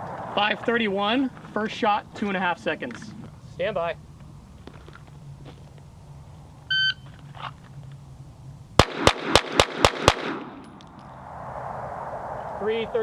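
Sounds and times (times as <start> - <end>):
rapid pistol shots: 8.8 - 10.6.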